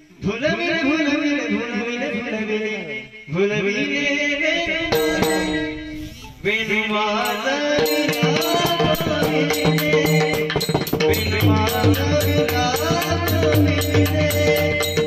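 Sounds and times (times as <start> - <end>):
man singing: 0.0 - 15.0
held instrumental tones: 4.8 - 15.0
sharp rhythmic strikes: 4.9 - 6.0, 7.1 - 15.0
hand drum: 5.0 - 5.7, 7.3 - 15.0.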